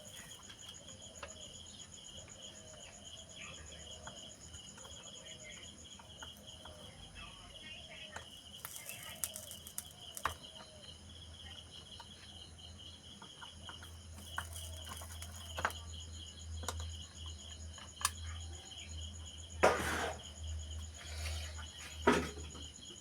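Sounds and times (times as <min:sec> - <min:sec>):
crickets chirping: 0:00.0 - 0:23.0
small clicks and taps: 0:08.1 - 0:10.6, 0:13.2 - 0:15.9, 0:16.6 - 0:17.0.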